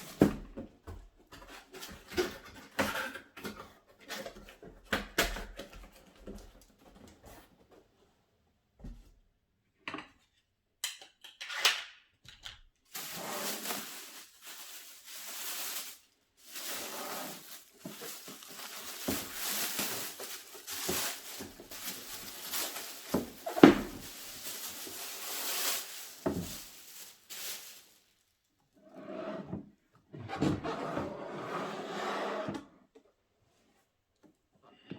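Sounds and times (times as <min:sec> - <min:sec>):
packaging rustling: 0:12.9 - 0:28.2.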